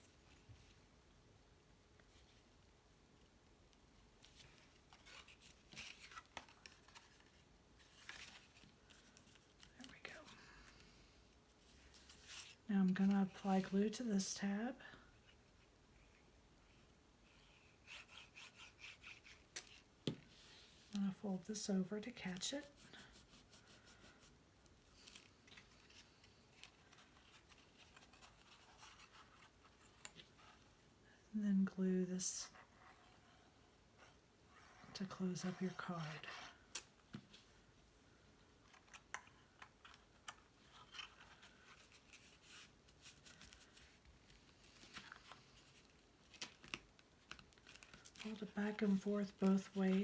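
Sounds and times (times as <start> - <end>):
paper rustling: 39.8 - 50.0.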